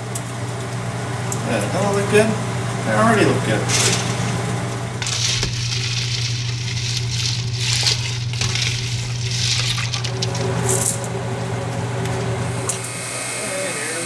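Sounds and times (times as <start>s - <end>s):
freeze dryer humming: 0.0s - 14.0s
water splashing in a bowl: 5.0s - 11.2s.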